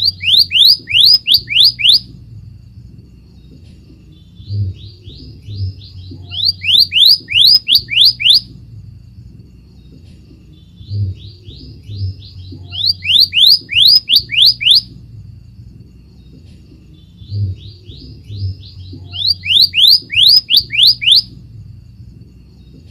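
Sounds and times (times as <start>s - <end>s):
bird singing rising whistles: 0.0s - 2.1s, 4.5s - 8.5s, 10.9s - 15.0s, 17.2s - 21.4s.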